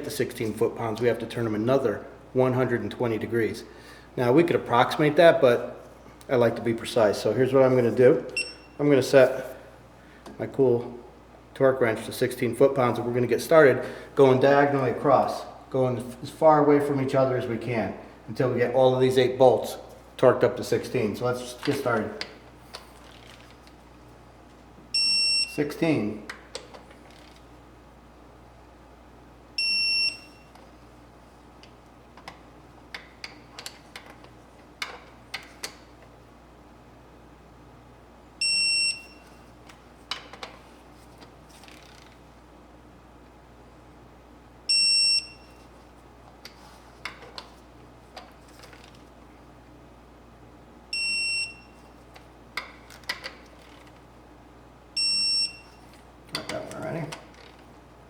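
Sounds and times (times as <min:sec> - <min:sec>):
torque wrench beeping: 0:08.3 - 0:08.8, 0:25.0 - 0:25.6, 0:55.0 - 0:55.8
torque wrench high beep: 0:08.4 - 0:08.8, 0:38.4 - 0:39.2, 0:44.7 - 0:45.6, 0:51.0 - 0:51.8, 0:55.0 - 0:55.8.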